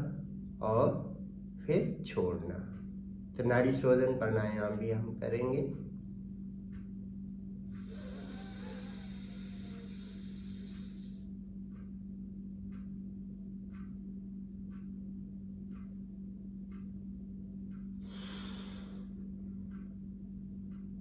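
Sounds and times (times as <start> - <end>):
steady low hum: 0.0 - 21.0
faint ticking: 6.0 - 21.0
breath through the nose: 7.8 - 11.2, 18.0 - 19.2.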